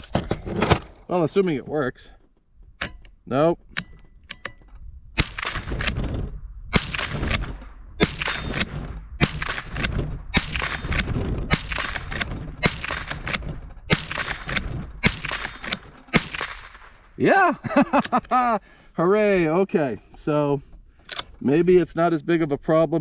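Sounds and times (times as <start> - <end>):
rifle shots: 5.2 - 17.2
rifle lever working: 6.8 - 16.7, 21.0 - 21.4.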